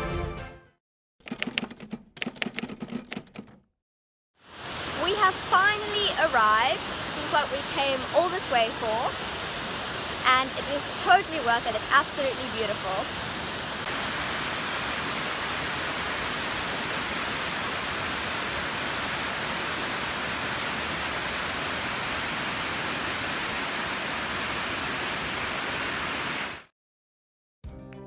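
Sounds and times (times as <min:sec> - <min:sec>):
waterfall rushing: 0:04.5 - 0:26.7.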